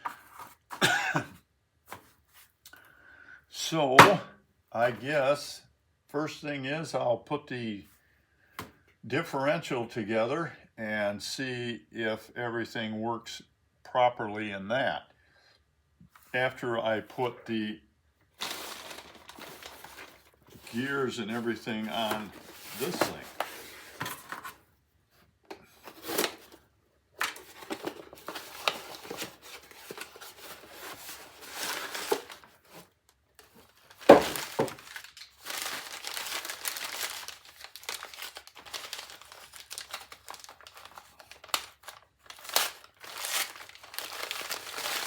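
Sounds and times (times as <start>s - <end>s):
packaging crinkling: 18.4s - 24.4s, 27.2s - 45.0s.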